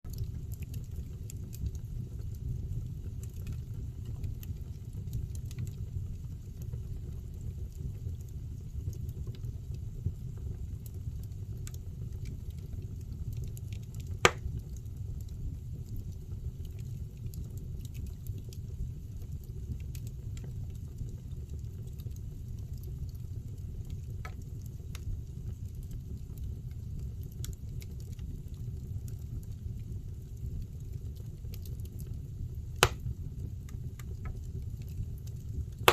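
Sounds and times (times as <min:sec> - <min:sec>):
fire crackling in fireplace: 0:00.1 - 0:35.9
loud pop from fire: 0:14.2 - 0:14.5, 0:32.8 - 0:33.2.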